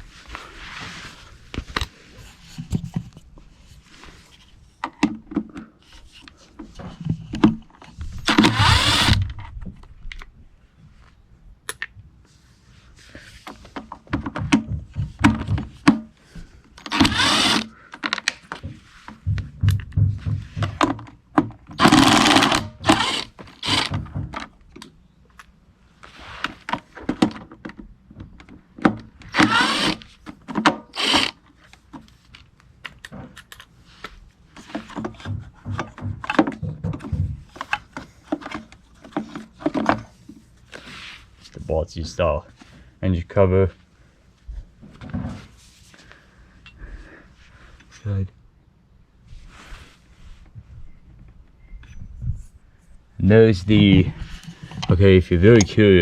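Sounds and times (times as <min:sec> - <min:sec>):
cordless screwdriver whirring: 0:08.3 - 0:09.3, 0:16.9 - 0:17.7, 0:21.8 - 0:24.0, 0:29.3 - 0:30.1, 0:31.0 - 0:31.4.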